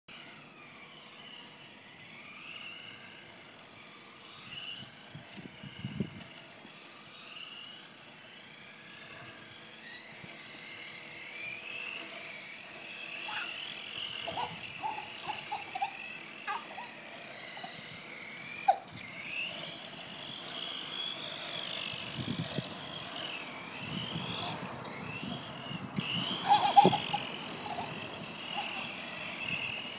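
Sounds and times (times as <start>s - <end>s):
toy car electric motor whining: 0.1s - 29.9s.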